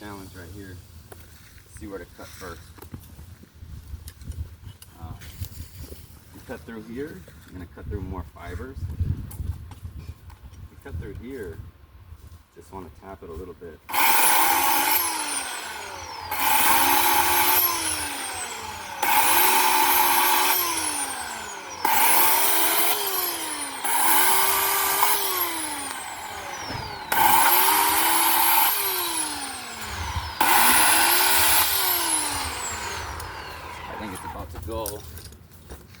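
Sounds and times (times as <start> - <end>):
chainsaw cutting wood: 13.9 - 35.0.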